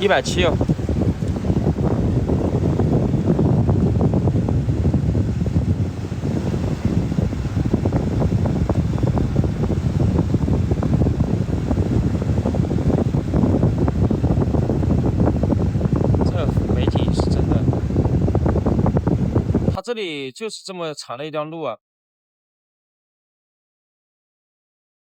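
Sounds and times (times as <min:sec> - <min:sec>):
wind buffeting microphone: 0:00.0 - 0:19.8.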